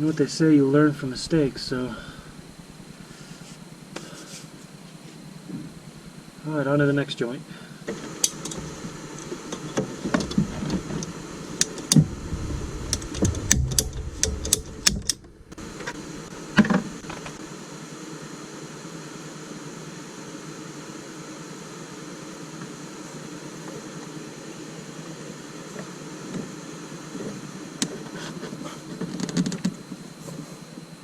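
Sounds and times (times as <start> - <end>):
steady hum: 0.0 - 29.0
low thumps: 11.8 - 17.4.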